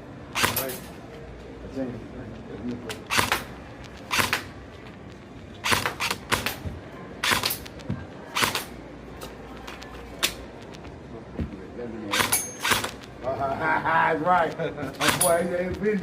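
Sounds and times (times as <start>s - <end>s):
airsoft gun shots: 0.4s - 0.8s, 3.1s - 3.5s, 4.1s - 4.5s, 5.6s - 6.6s, 7.2s - 7.7s, 8.4s - 8.7s, 12.1s - 13.1s, 15.0s - 15.3s.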